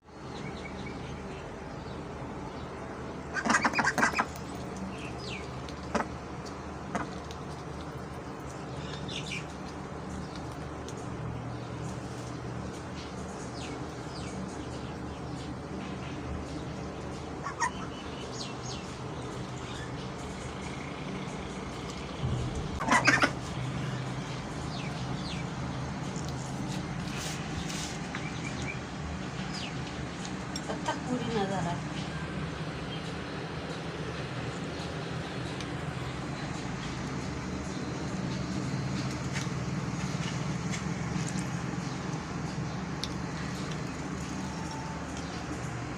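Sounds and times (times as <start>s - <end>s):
steady low hum: 0.0s - 45.9s
duck calls: 22.8s - 23.4s.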